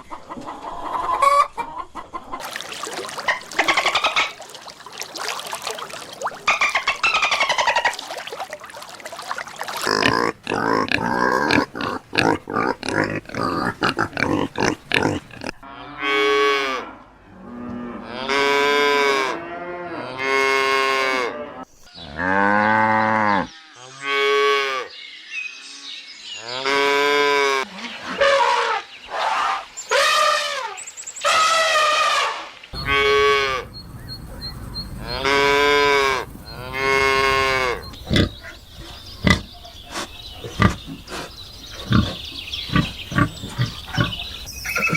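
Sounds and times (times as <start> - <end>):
cattle mooing: 32.8 - 33.8, 34.4 - 38.6.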